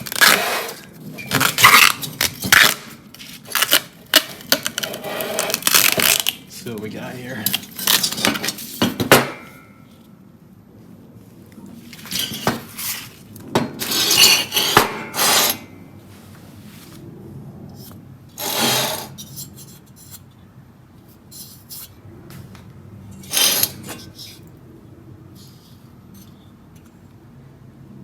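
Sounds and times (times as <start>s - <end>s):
rubbing and scraping metal: 0.0s - 6.8s, 12.0s - 16.9s, 18.4s - 20.3s, 23.2s - 24.5s.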